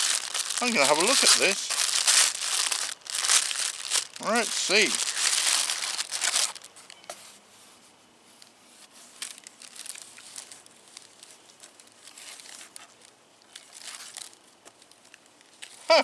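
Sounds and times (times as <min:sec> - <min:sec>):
packaging crinkling and tearing: 0:00.0 - 0:06.8, 0:09.1 - 0:15.9
packaging rustling: 0:00.0 - 0:06.8, 0:09.2 - 0:14.4.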